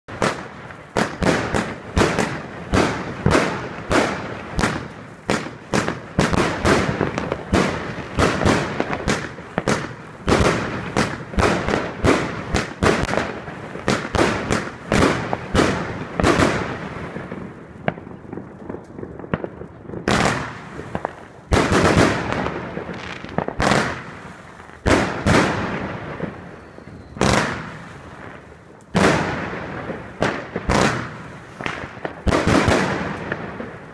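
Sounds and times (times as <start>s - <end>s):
firework bangs: 0.1s - 33.9s.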